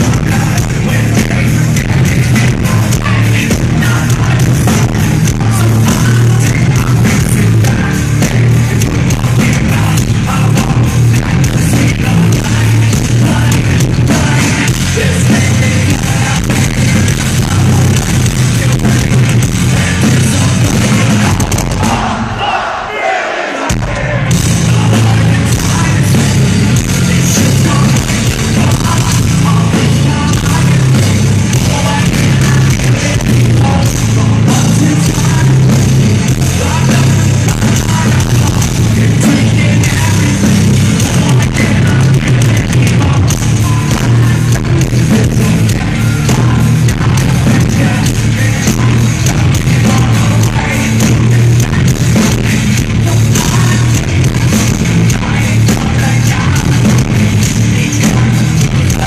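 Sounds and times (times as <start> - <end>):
person singing: 0.0 - 23.0, 23.6 - 59.0
heavy metal band playing: 0.0 - 59.0.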